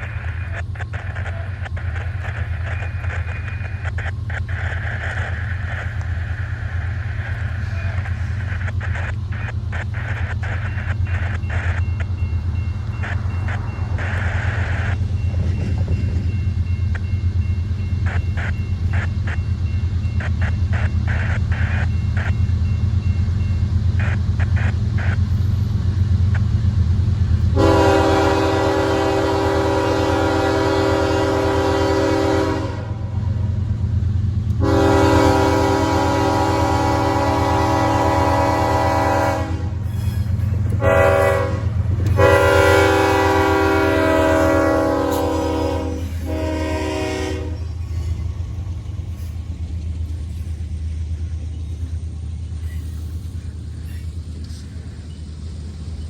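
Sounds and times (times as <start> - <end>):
train horn blasts: 27.5 - 33.4, 34.6 - 48.1.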